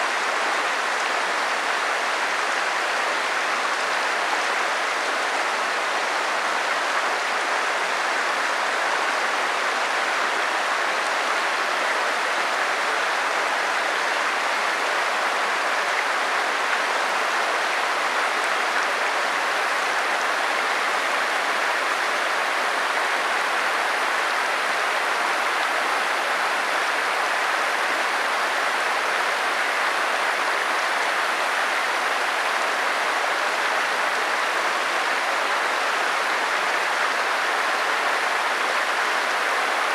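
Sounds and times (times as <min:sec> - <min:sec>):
flowing stream: 0:00.0 - 0:39.9.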